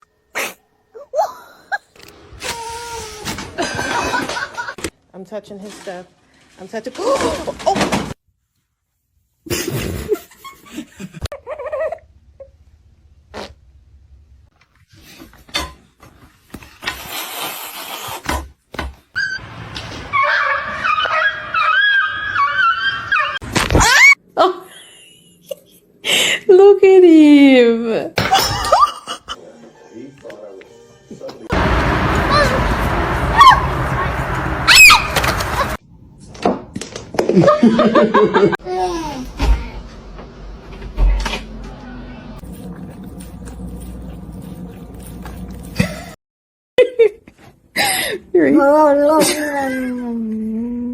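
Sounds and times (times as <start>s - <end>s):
person laughing: 3.5s - 4.8s, 37.2s - 39.0s
rustling scrape: 5.4s - 7.5s
pet animal whining: 20.1s - 23.4s.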